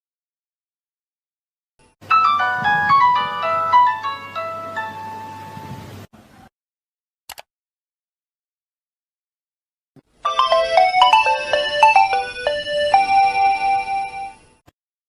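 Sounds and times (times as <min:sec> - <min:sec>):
mobile phone ringtone melody: 0:02.0 - 0:05.6, 0:10.2 - 0:14.6.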